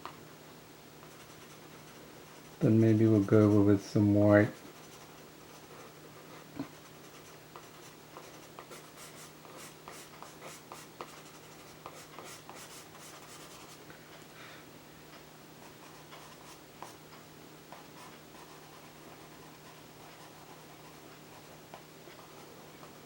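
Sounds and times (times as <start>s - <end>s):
pencil scratching on paper: 1.0s - 3.7s, 4.5s - 13.8s, 17.8s - 21.6s.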